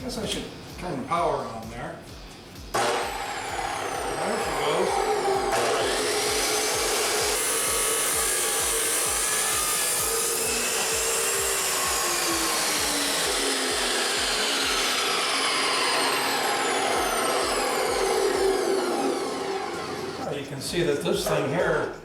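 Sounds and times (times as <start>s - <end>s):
chop saw whining: 2.7s - 20.3s.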